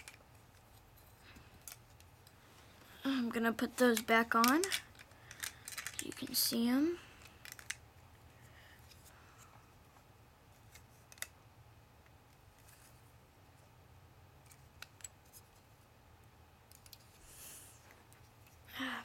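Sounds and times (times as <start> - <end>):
plastic bricks clicking: 3.8 - 6.3, 7.4 - 7.8.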